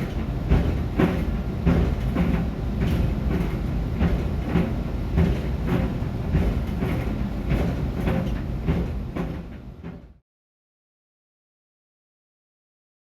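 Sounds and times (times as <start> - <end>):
dryer drum rumbling: 0.0 - 10.2
sneakers thumping in dryer: 0.0 - 10.2.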